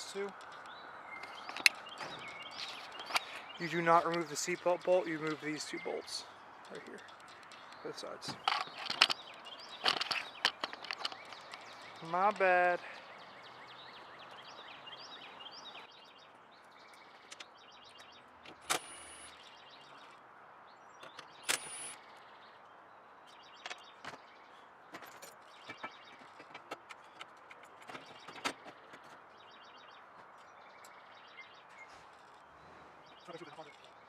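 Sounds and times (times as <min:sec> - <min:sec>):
birds chirping: 0:00.0 - 0:34.0
hand tools clinking: 0:06.7 - 0:12.5.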